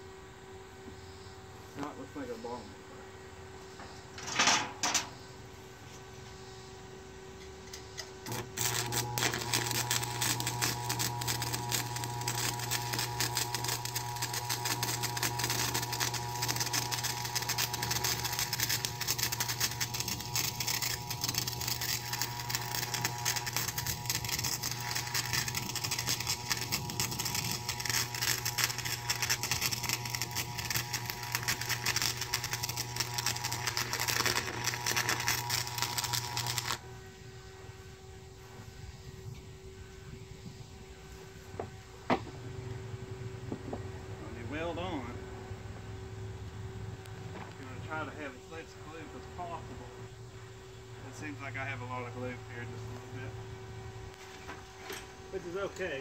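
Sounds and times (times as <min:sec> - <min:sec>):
welding arc crackling: 0:08.0 - 0:36.8.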